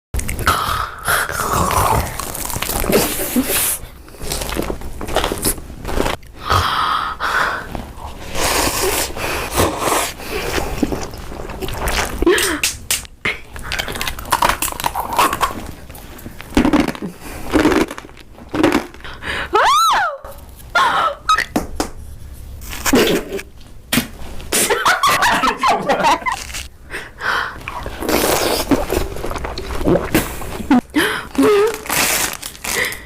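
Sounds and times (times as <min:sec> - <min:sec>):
crunching while eating: 0:00.2 - 0:06.5, 0:07.9 - 0:19.3, 0:22.5 - 0:23.6, 0:26.0 - 0:26.7, 0:27.6 - 0:33.0
person squealing: 0:19.5 - 0:21.5
person giggling: 0:24.6 - 0:26.6, 0:30.6 - 0:31.8.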